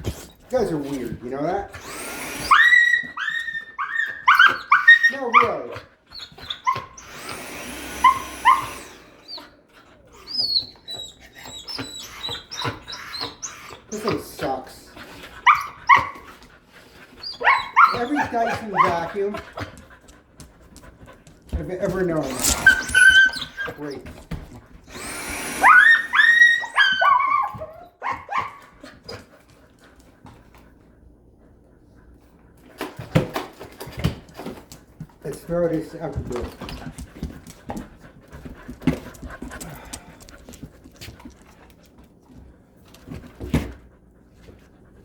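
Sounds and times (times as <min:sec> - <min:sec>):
dog whining: 0:01.7 - 0:14.2, 0:15.4 - 0:16.4, 0:17.1 - 0:19.7, 0:22.2 - 0:24.3, 0:24.9 - 0:29.2
dog yelping: 0:02.1 - 0:09.5, 0:10.2 - 0:13.8, 0:15.4 - 0:16.3, 0:17.2 - 0:19.7, 0:22.2 - 0:24.0, 0:25.0 - 0:29.2.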